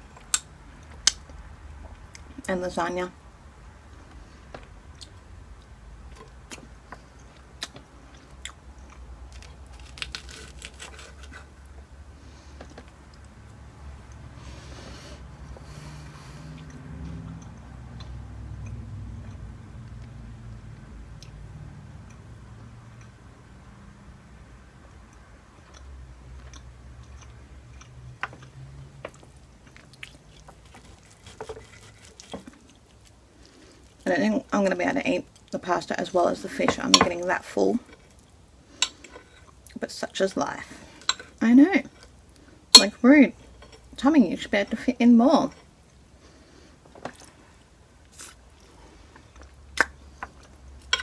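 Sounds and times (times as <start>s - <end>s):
person chewing food: 4.2s - 21.4s, 24.9s - 34.1s, 45.8s - 51.0s
small crunches: 7.6s - 11.5s.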